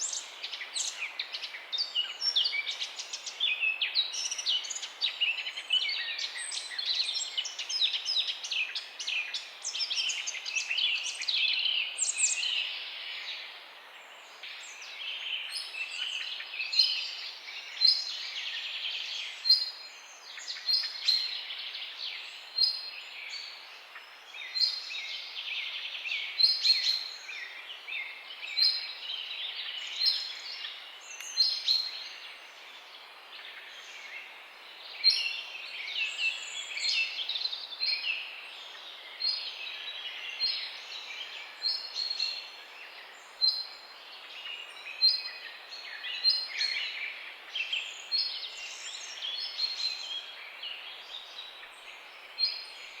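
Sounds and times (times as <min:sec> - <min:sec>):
songbirds chirping: 0:00.0 - 0:53.0.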